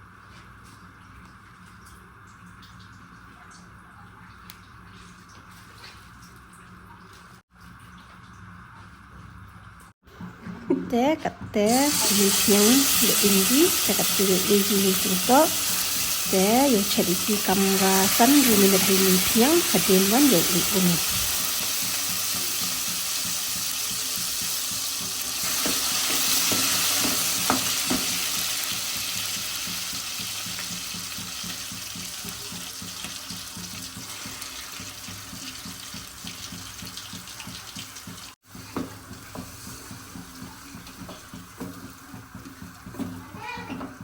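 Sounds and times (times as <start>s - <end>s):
food sizzling in hot oil: 11.6s - 43.0s.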